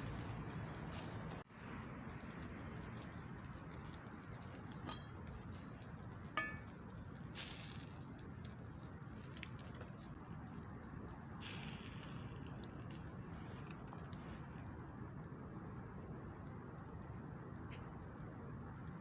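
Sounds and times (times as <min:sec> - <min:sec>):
wood fire hissing and crackling: 0:00.0 - 0:19.0
light metallic clink: 0:04.7 - 0:05.6, 0:06.2 - 0:06.8.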